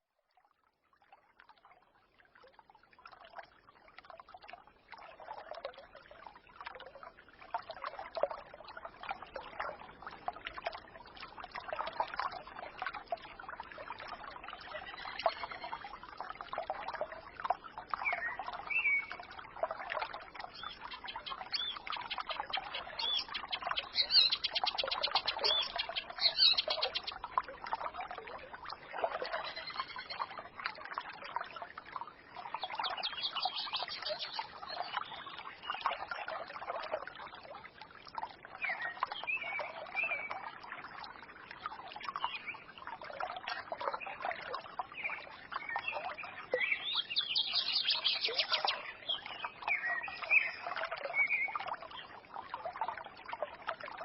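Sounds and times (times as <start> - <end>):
stream trickling and babbling: 0.0 - 54.0
birds chirping: 20.6 - 27.1.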